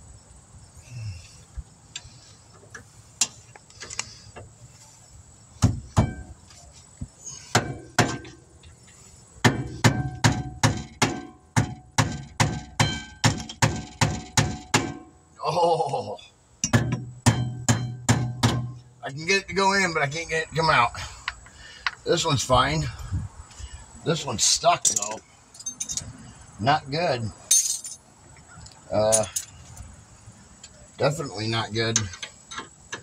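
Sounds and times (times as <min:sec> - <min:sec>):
hammer striking steel: 0:09.4 - 0:15.1, 0:16.6 - 0:18.8.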